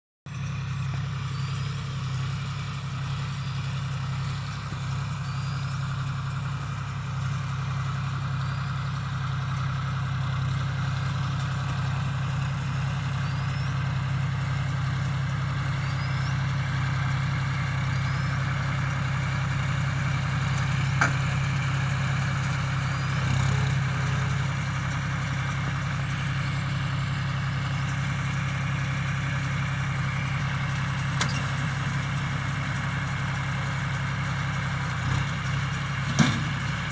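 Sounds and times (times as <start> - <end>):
tractor diesel engine running: 0.3 - 36.9
faint short squeak: 1.3 - 1.8, 15.8 - 16.3, 31.2 - 31.6.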